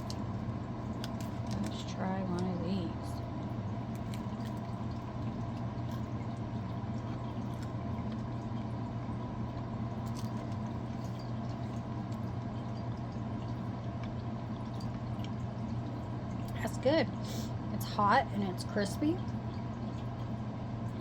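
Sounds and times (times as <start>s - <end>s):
person chewing crispy snack: 0.0s - 1.9s, 3.8s - 8.4s, 9.9s - 12.3s
steady electrical hum: 0.0s - 21.0s.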